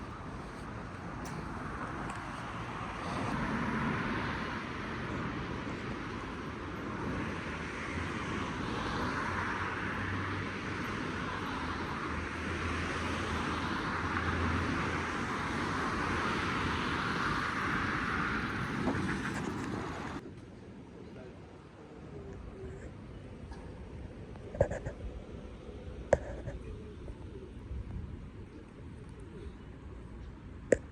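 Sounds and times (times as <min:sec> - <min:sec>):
low engine hum: 0:00.0 - 0:20.2
vehicles rushing past: 0:00.0 - 0:20.3.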